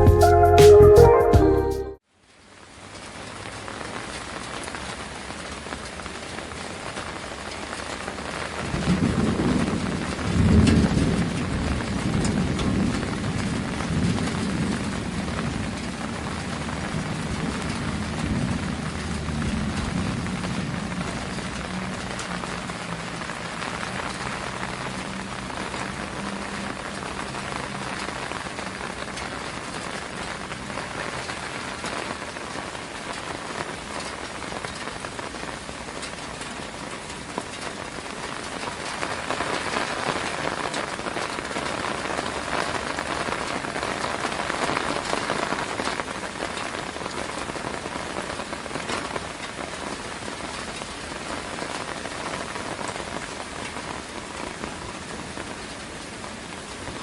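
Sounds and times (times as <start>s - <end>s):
steady rain: 2.0s - 57.0s
thunder rumble: 8.6s - 26.0s.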